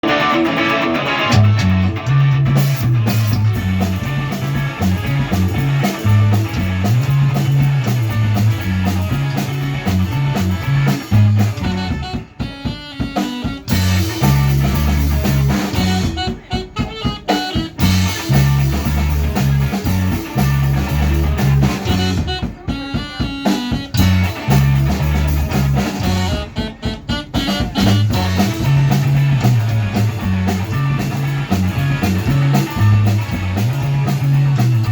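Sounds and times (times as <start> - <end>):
bass guitar riff: 0.0 - 34.9
rock band playing: 0.0 - 34.9.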